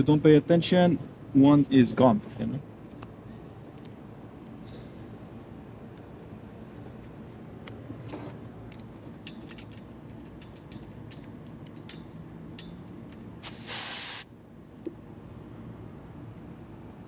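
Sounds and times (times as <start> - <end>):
small metal clicks: 8.0 - 13.3
short loud hiss: 13.4 - 14.3.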